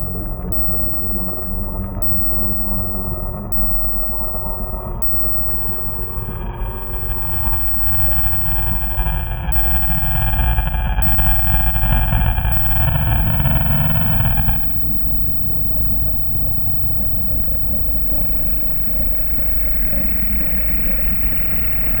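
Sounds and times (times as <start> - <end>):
deep distorted monster growl: 6.3 - 14.9.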